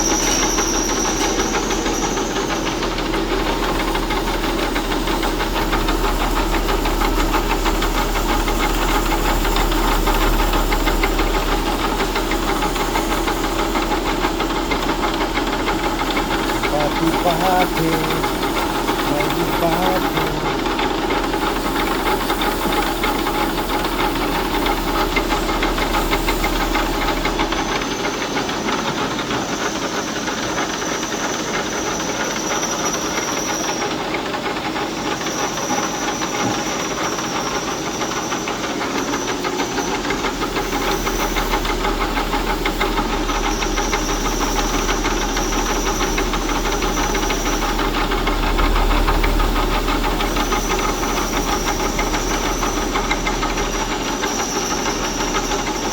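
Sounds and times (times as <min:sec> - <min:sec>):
machine tool cutting metal: 0:00.0 - 0:30.5
thin high whine: 0:00.0 - 0:33.8, 0:35.2 - 0:55.9.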